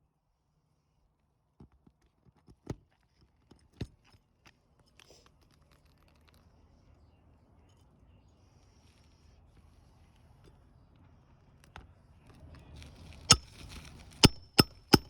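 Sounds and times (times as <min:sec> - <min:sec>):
hand tools tapping on roof shingles: 0:13.3 - 0:15.0.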